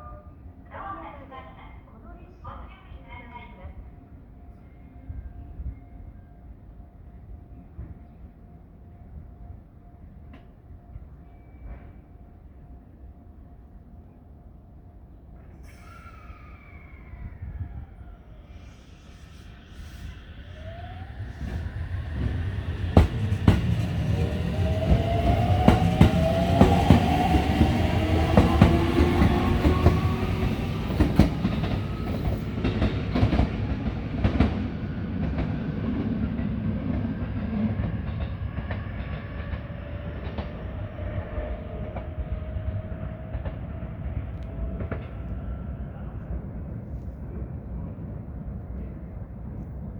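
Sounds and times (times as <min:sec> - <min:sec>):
electric train motor whine: 0:17.8 - 0:33.0.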